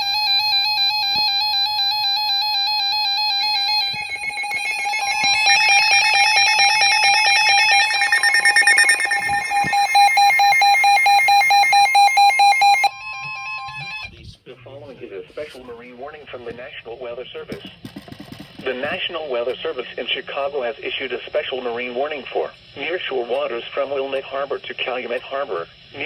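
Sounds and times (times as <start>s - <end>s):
rapid pulsing beeps: 0.0s - 14.0s
warbling alarm tone: 0.0s - 14.1s
steady warning tone: 0.0s - 14.2s.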